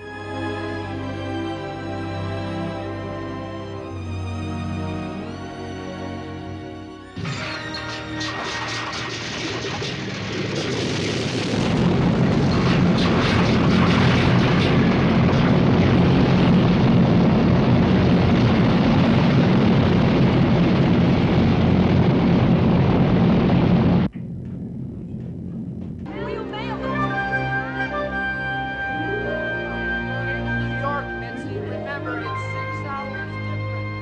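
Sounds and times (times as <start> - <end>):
deep engine-like rumble: 7.9 - 33.5.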